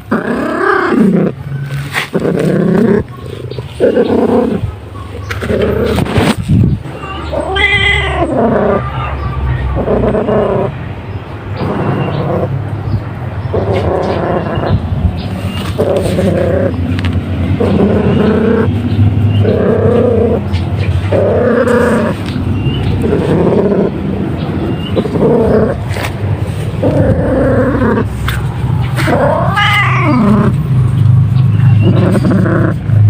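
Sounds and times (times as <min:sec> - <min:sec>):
cat purring loudly: 0:00.0 - 0:08.9, 0:09.7 - 0:10.8, 0:11.6 - 0:12.6, 0:13.5 - 0:33.0
cat call: 0:06.9 - 0:09.8, 0:29.0 - 0:30.4.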